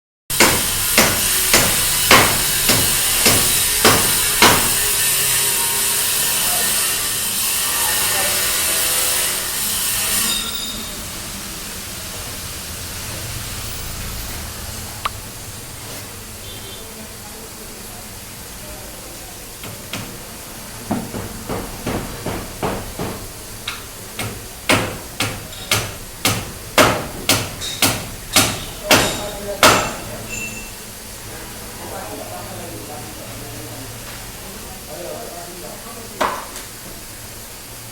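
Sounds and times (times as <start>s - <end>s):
hammer blows: 0.3s - 6.4s.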